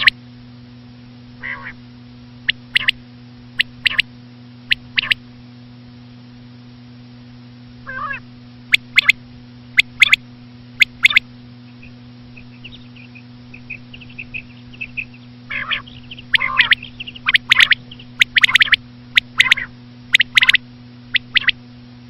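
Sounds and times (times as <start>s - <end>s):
quail calling: 1.4s - 1.8s, 2.5s - 3.0s, 3.6s - 4.0s, 4.7s - 5.2s, 7.8s - 9.2s, 9.8s - 10.2s, 10.8s - 11.2s, 12.4s - 21.6s
soft bird twittering: 2.5s - 3.0s, 3.6s - 4.1s, 4.7s - 5.2s, 7.9s - 9.2s, 9.8s - 10.2s, 10.8s - 21.6s.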